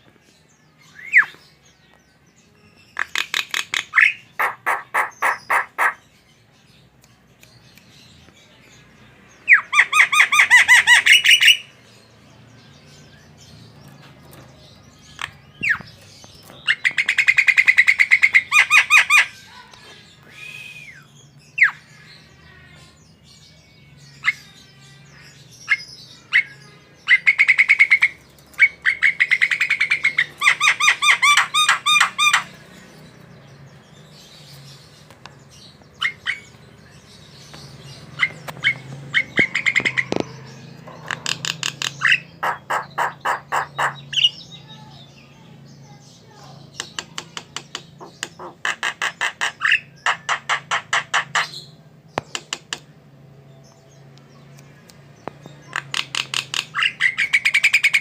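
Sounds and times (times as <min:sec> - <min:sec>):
bird chattering: 0:02.9 - 0:06.1, 0:09.5 - 0:11.7, 0:15.0 - 0:20.4, 0:25.7 - 0:33.4, 0:35.6 - 0:45.0, 0:45.9 - 0:53.0, 0:55.2 - 0:58.0
bird sharp calls: 0:02.9 - 0:06.1, 0:09.5 - 0:11.8, 0:14.3 - 0:22.6, 0:25.6 - 0:33.4, 0:35.6 - 0:44.8, 0:46.5 - 0:52.9, 0:55.2 - 0:58.0.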